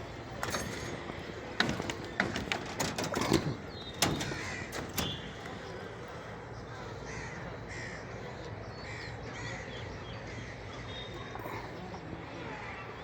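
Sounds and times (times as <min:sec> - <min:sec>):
birds harsh calls: 0:00.6 - 0:10.8.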